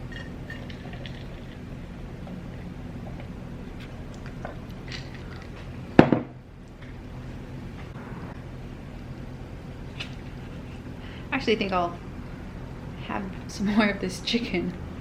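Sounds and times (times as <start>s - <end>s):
chewing food: 0.1s - 5.7s.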